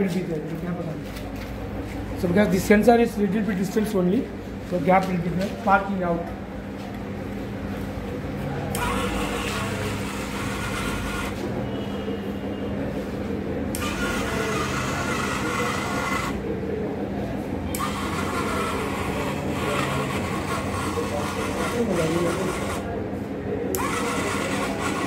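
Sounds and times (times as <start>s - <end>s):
small gear motors running: 8.7s - 11.4s, 13.7s - 16.4s, 17.7s - 22.9s, 23.7s - 25.0s.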